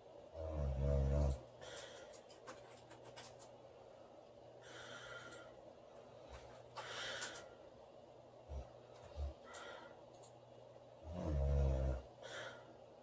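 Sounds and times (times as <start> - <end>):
woman breathing faintly: 4.6 - 7.7.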